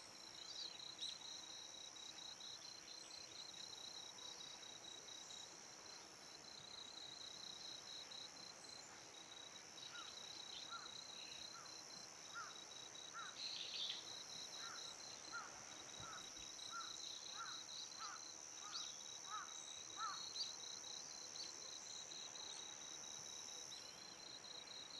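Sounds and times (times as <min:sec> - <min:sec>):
insects trilling: 0:06.4 - 0:24.9.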